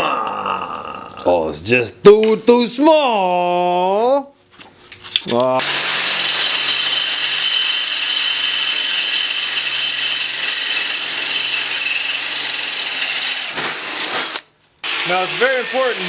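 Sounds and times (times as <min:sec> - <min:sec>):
angle grinder grinding steel: 0:05.6 - 0:16.0.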